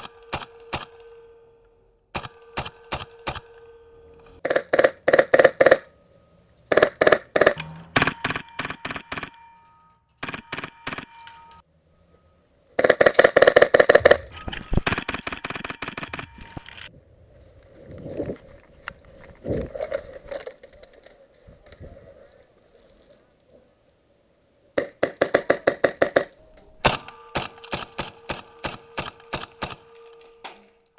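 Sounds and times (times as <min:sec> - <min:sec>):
airsoft guns firing in bursts: 0:04.4 - 0:05.9, 0:06.7 - 0:09.3, 0:12.8 - 0:16.3, 0:24.8 - 0:26.3.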